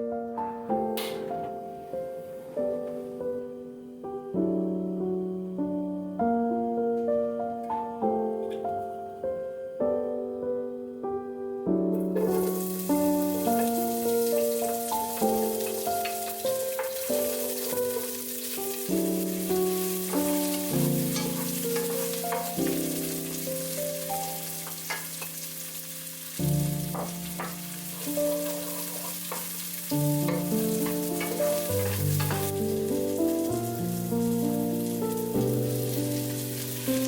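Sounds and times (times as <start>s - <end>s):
slow background music: 0.0s - 37.0s
food sizzling in a pot: 12.0s - 37.0s.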